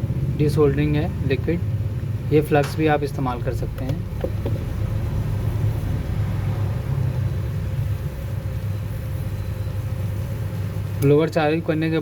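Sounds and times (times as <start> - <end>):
blower running with low rumble: 0.0 - 12.0.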